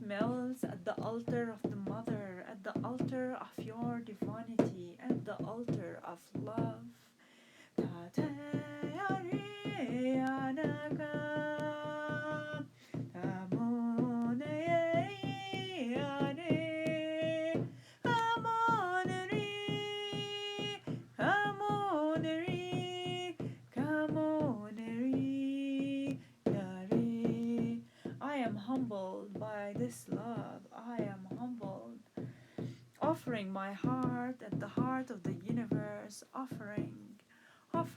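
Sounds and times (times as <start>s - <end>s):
steady drumbeat: 7.8s - 31.6s.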